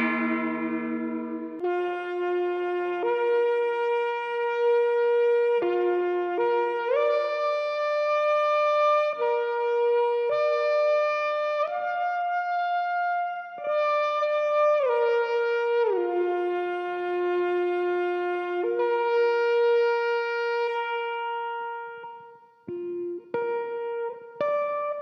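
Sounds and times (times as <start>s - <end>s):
electric guitar notes: 0.0s - 2.9s.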